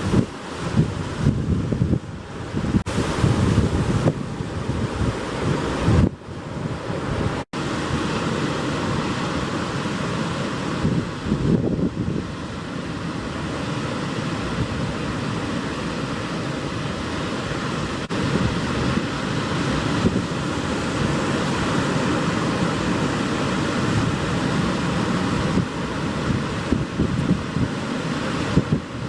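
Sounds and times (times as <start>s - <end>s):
surf breaking on rocky shore: 0.0s - 29.0s
wind buffeting microphone: 0.0s - 29.0s.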